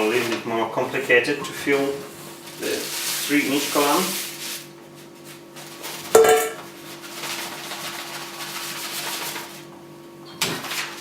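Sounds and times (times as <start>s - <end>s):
sharp metallic clink: 6.2s - 6.6s.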